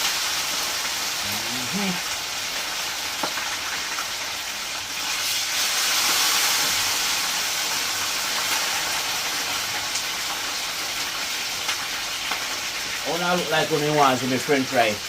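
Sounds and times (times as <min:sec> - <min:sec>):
fish sizzling in hot oil: 0:00.0 - 0:15.0.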